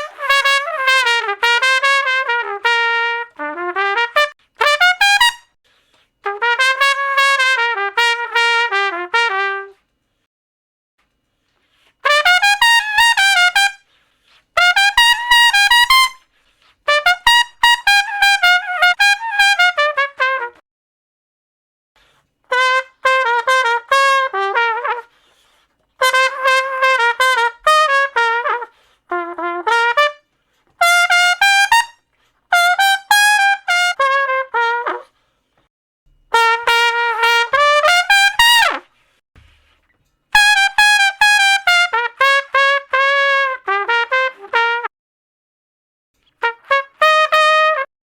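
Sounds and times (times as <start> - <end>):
solo trumpet playing: 0.0 - 5.6, 6.2 - 9.8, 12.0 - 13.9, 14.6 - 20.6, 22.5 - 25.4, 26.0 - 35.1, 36.3 - 39.0, 40.3 - 44.9, 46.4 - 47.9.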